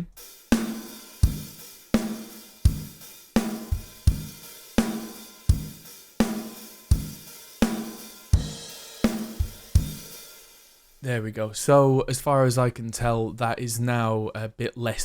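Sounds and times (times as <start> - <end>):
snare drum: 0.0 - 10.8
cymbals and hi-hat: 0.0 - 11.0
drum kit groove: 0.0 - 11.0
kick drum: 1.2 - 1.5, 2.7 - 4.4, 5.5 - 5.8, 6.9 - 7.2, 8.4 - 8.7, 9.4 - 10.1.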